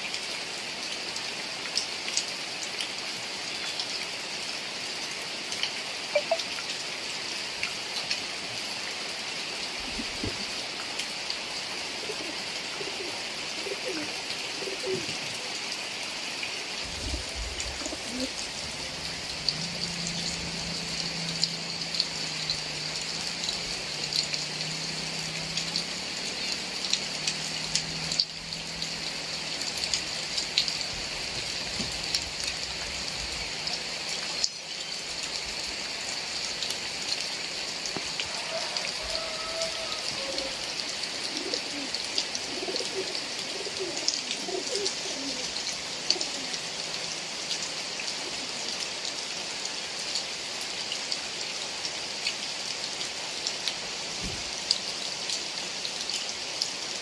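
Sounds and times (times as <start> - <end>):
heavy rain falling: 0.0 - 57.0
raindrops ticking close by: 0.0 - 57.0
dove cooing: 11.9 - 15.3, 17.0 - 18.8, 38.3 - 46.6.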